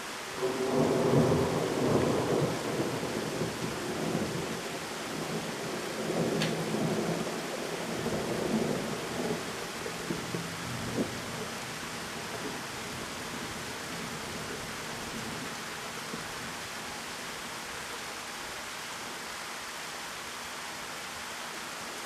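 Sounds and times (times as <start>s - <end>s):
pouring rain: 0.0s - 22.0s
thunder rumbling: 0.4s - 14.4s.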